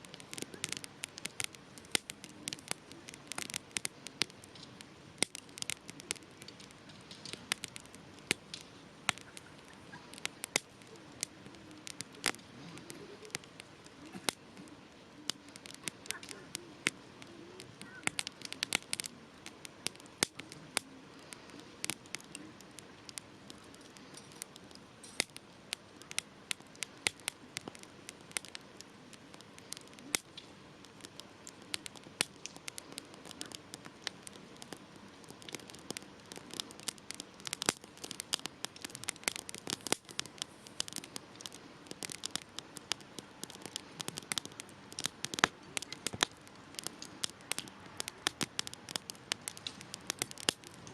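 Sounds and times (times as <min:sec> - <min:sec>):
campfire crackling and popping: 0:00.0 - 0:50.9
soft hiss of burning: 0:00.0 - 0:50.9.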